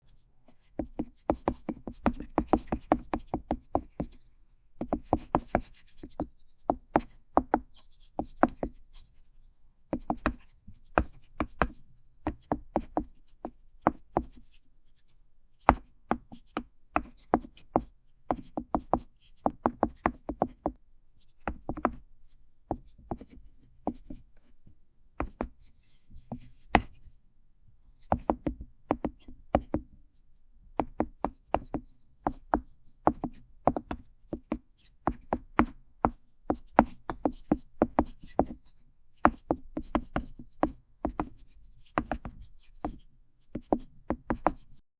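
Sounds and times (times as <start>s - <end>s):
chalk tapping on chalkboard: 30.8s - 44.8s.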